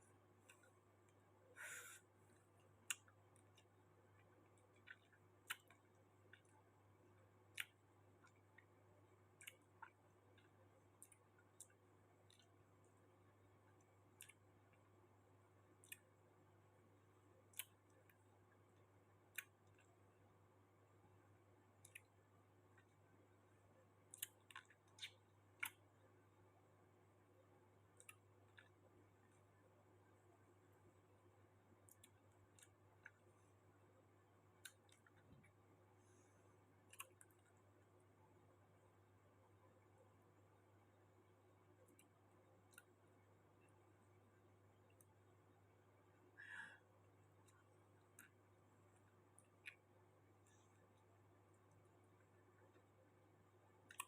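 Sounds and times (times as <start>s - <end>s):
mouth clicks and smacks chewing: 2.6s - 12.6s, 24.0s - 25.8s, 36.9s - 37.6s, 47.4s - 49.9s.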